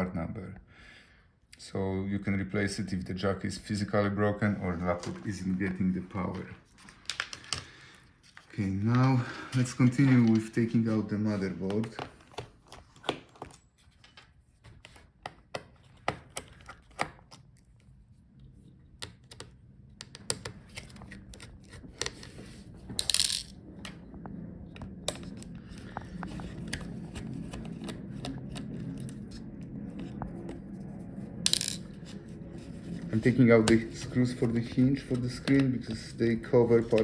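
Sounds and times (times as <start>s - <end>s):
low hum: 17.6s - 37.0s.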